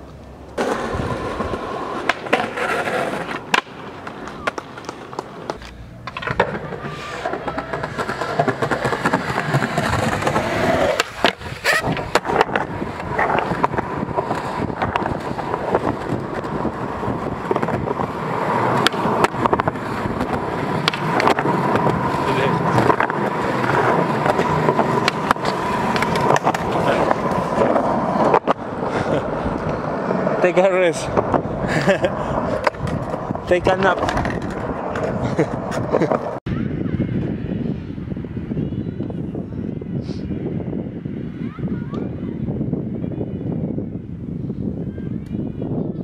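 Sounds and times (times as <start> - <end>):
skateboard wheels rolling on pavement: 0.0 - 46.0
skateboard clacking on ground: 0.5 - 36.4.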